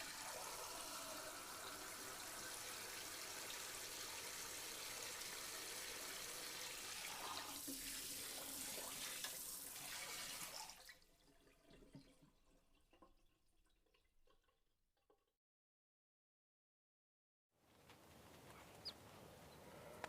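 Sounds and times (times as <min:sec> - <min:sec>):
tap water running into sink: 0:00.0 - 0:15.2
faint water drips: 0:08.4 - 0:15.3.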